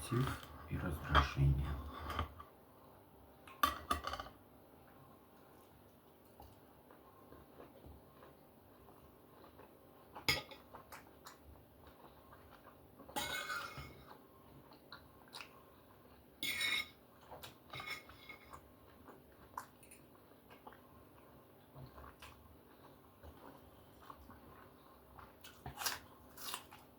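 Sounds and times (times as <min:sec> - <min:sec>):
cutlery clinking on plate: 0:13.2 - 0:14.0.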